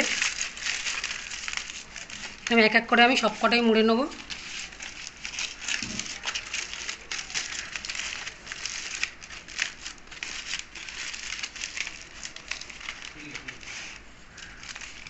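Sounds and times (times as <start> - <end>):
aluminium foil crinkling: 0.0 - 15.0.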